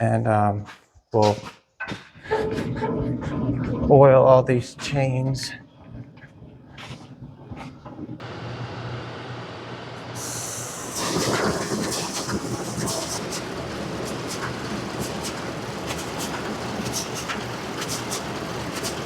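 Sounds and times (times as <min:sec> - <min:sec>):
tractor engine running: 0:10.2 - 0:19.0.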